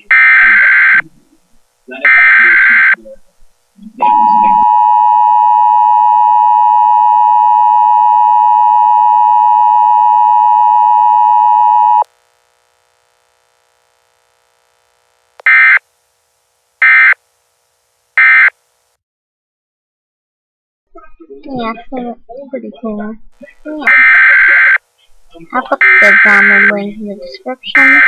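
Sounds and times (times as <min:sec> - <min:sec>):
two-tone alert signal: 0:04.0 - 0:12.0
short digital data bursts: 0:15.4 - 0:15.8, 0:16.8 - 0:17.2, 0:27.8 - 0:28.0.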